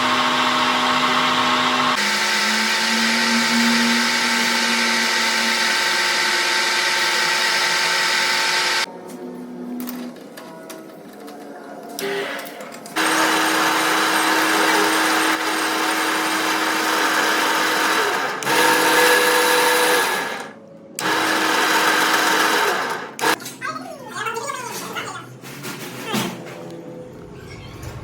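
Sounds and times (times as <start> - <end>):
electric power tool running: 0.0 - 8.9, 13.0 - 23.4.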